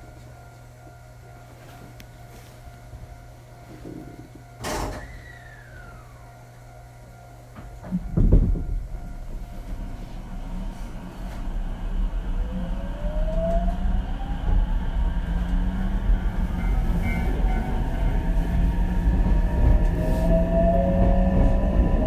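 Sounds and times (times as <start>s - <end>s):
wheels rumbling on track: 7.8s - 22.0s.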